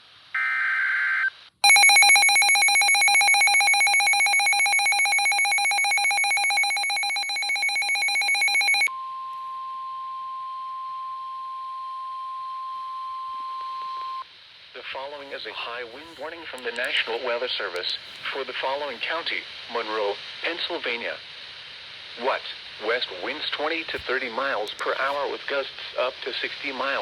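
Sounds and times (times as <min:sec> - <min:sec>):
pulsing electronic alarm: 0:01.6 - 0:08.9
steady warning tone: 0:01.6 - 0:08.9.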